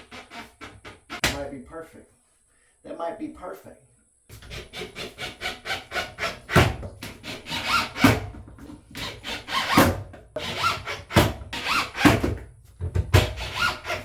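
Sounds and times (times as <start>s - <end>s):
hand saw strokes: 0.0s - 1.3s, 4.3s - 12.3s, 13.2s - 14.0s.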